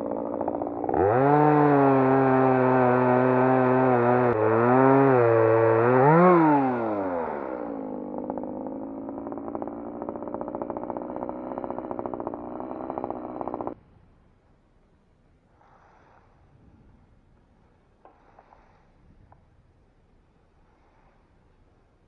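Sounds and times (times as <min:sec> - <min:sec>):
electric chainsaw running: 0:00.0 - 0:13.8.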